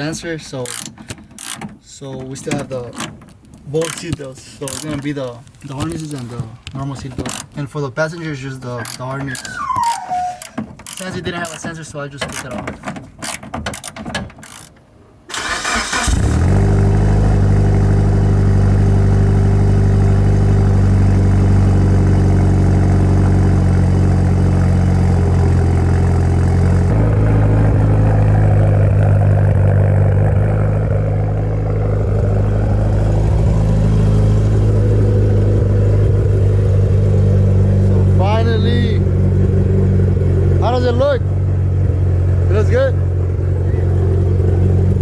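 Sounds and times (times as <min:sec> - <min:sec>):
car engine cranking: 0:00.0 - 0:45.0
car engine idling: 0:15.4 - 0:45.0.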